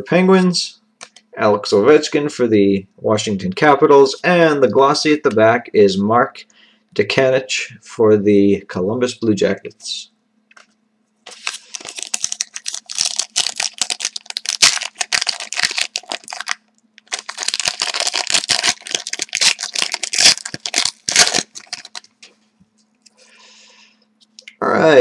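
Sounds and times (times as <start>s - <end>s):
foil wrapper crinkling and tearing: 11.3s - 22.2s.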